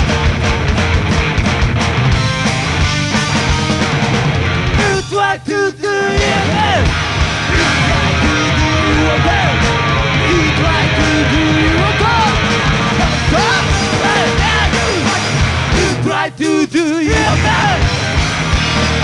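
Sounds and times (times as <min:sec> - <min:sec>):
bass and drums: 0:00.0 - 0:19.0
distorted guitars: 0:00.0 - 0:19.0
person shouting vocals: 0:13.3 - 0:17.9.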